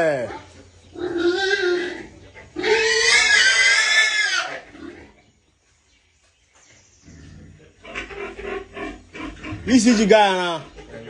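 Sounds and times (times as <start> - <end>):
pig squealing: 0.2 - 5.2, 7.1 - 10.2.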